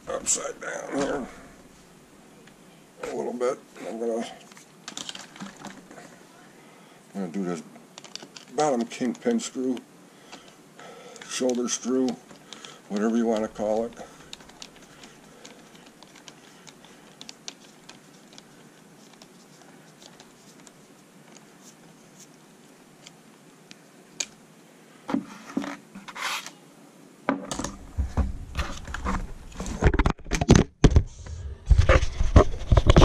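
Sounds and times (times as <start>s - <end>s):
hand tool clicking on screw: 11.2s - 18.4s.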